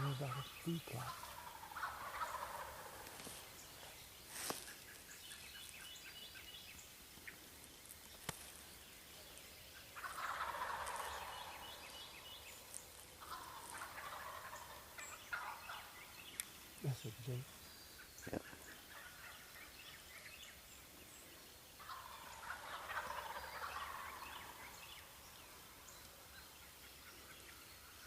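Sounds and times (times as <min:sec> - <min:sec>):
turkeys gobbling: 0:00.0 - 0:03.4, 0:09.9 - 0:16.0, 0:18.3 - 0:19.6, 0:21.8 - 0:25.8.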